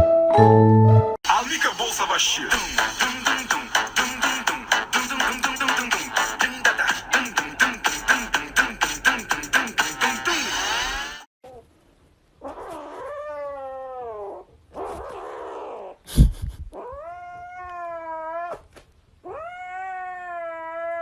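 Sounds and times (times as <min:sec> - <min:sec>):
cat yowling: 0:16.8 - 0:21.0.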